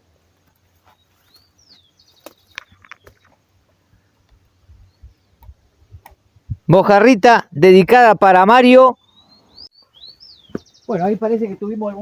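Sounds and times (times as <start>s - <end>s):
bird chirps: 0.8s - 3.4s, 8.8s - 12.0s.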